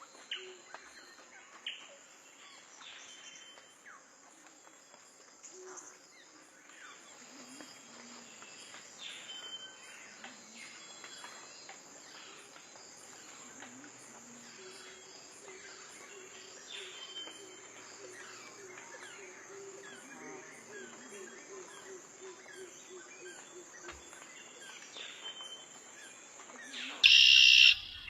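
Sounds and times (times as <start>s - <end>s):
high-pitched insect drone: 27.0s - 28.0s.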